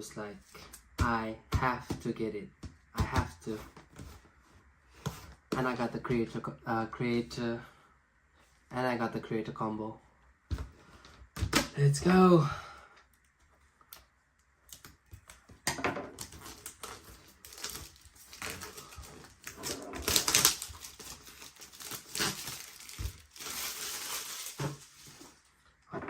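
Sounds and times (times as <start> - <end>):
packaging crinkling and rustling: 14.6 - 25.6.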